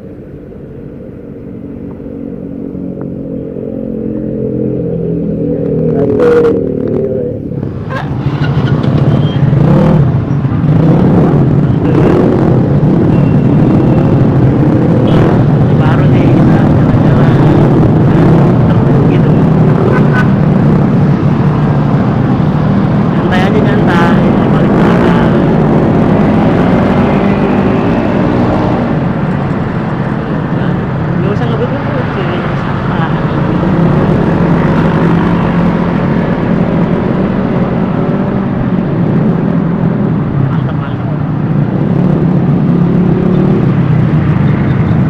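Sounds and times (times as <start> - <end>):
road noise: 0.0 - 45.0
wind rumble on microphone: 0.0 - 45.0.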